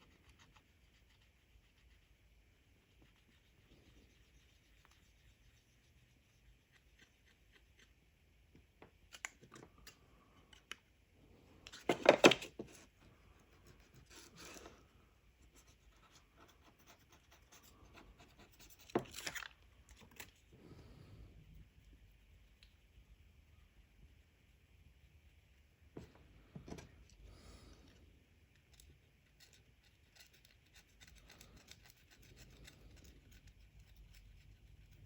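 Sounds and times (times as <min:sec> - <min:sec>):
small parts clicking and scraping: 0:17.5 - 0:20.5, 0:26.7 - 0:35.0.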